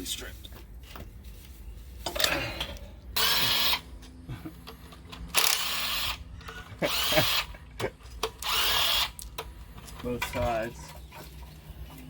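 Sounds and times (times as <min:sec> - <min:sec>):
power tool bursts on bolts: 0:03.2 - 0:03.8, 0:05.3 - 0:06.2, 0:06.8 - 0:07.5, 0:08.2 - 0:09.2.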